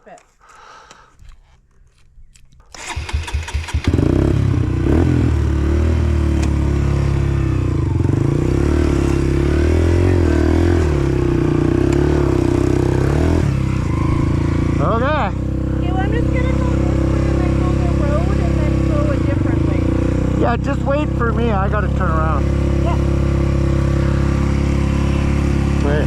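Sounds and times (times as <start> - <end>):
dirt bike starter cranking: 2.7 - 4.4
dirt bike engine idling: 3.9 - 26.0.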